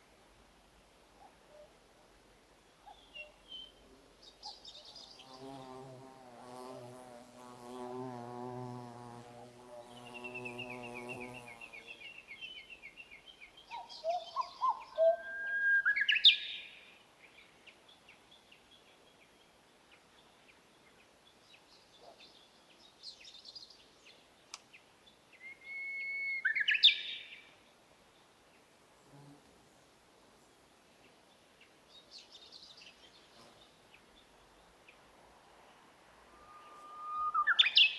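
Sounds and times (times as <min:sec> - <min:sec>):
songbirds singing: 0:02.4 - 0:25.6, 0:31.0 - 0:37.9
flying insect buzzing: 0:05.1 - 0:12.1.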